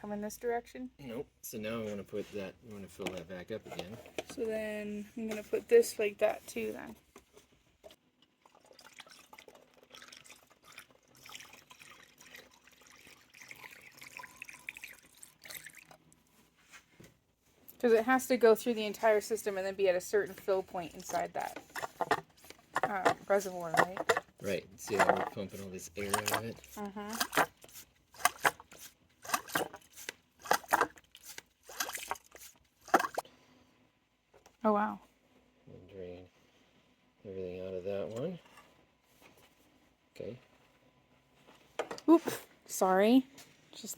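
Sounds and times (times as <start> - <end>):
liquid pouring and gurgling: 8.4 - 16.2, 29.2 - 33.2.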